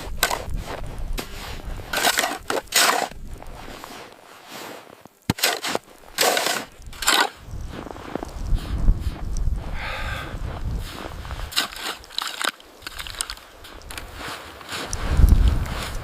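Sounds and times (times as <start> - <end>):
wind rumble on microphone: 0.0 - 2.0, 3.1 - 3.8, 6.7 - 11.6, 14.9 - 16.0
snow crunching: 0.0 - 16.0.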